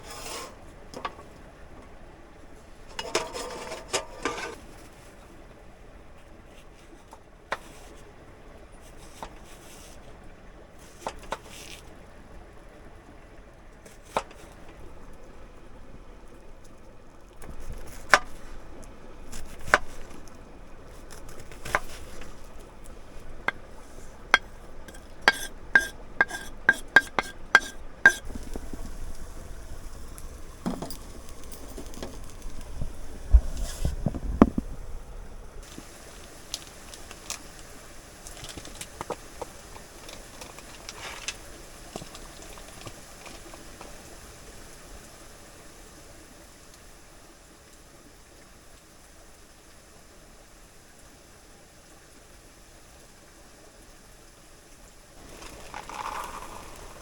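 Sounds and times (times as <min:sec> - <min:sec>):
utensil scraping a pan: 0:00.0 - 0:01.3, 0:02.7 - 0:04.9, 0:21.1 - 0:32.6, 0:55.2 - 0:57.0
sausages and onions sizzling in pan: 0:21.3 - 0:34.1, 0:35.6 - 0:43.8, 0:55.2 - 0:57.0.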